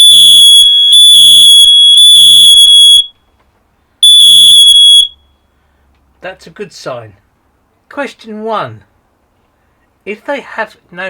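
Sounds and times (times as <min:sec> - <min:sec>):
smoke alarms beeping: 0:00.0 - 0:03.2, 0:04.0 - 0:05.5.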